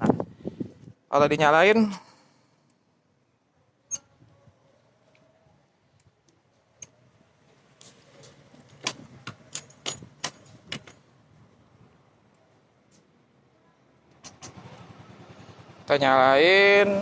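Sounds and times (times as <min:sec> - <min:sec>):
keys jangling and clicking: 0:07.8 - 0:11.0.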